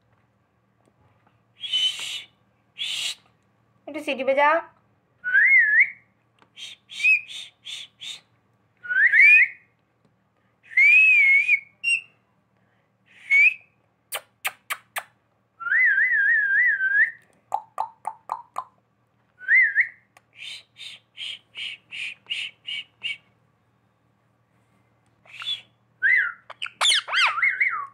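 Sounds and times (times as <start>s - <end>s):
parakeet whistling and chirping: 6.6s - 8.1s, 11.2s - 12.2s, 25.3s - 27.9s.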